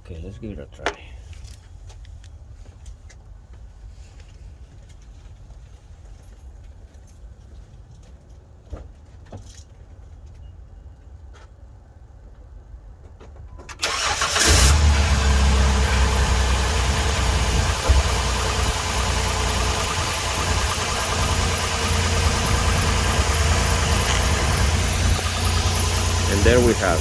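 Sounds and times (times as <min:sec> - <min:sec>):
car engine starting and idling: 0:13.7 - 0:27.0.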